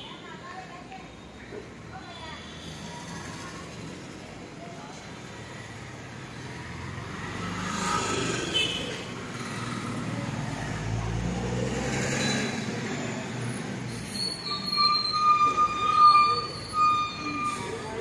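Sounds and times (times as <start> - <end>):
vehicle engine passing: 6.3 - 8.5, 9.1 - 13.8.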